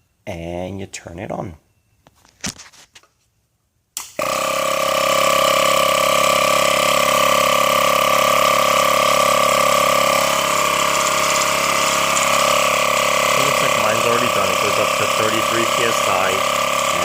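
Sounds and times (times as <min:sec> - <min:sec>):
air compressor droning: 0:04.2 - 0:17.0.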